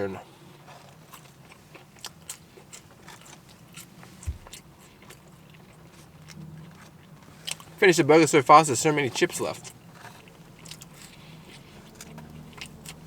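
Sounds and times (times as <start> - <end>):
person chewing food: 0.3 - 7.8, 9.6 - 13.0
low thump: 4.2 - 4.6.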